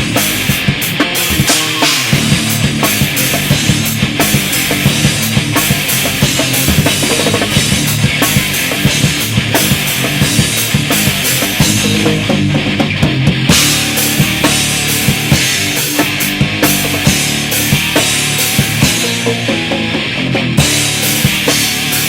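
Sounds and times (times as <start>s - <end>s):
drum kit beat: 0.0s - 22.0s
heavy rock band playing: 0.0s - 22.0s.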